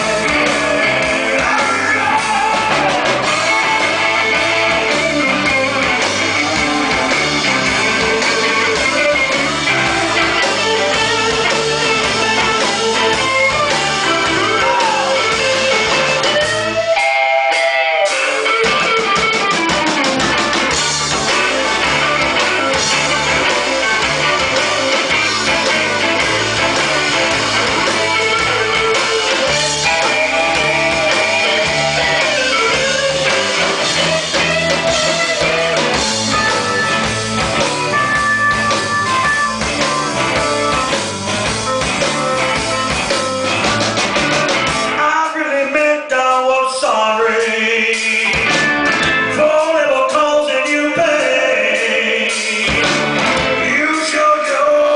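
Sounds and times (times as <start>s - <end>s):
person singing: 0.0s - 5.0s, 44.9s - 54.9s
blues-rock band playing: 0.0s - 54.9s
electric guitar: 0.0s - 54.9s.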